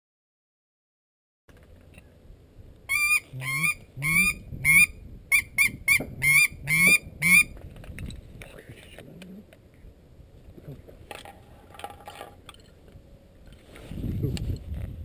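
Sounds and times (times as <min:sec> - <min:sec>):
honking waterfowl calls: 0:02.9 - 0:07.5.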